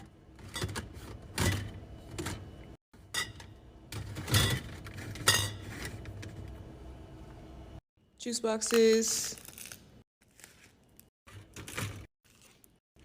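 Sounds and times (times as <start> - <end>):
groceries knocking and clattering: 0.0 - 6.5.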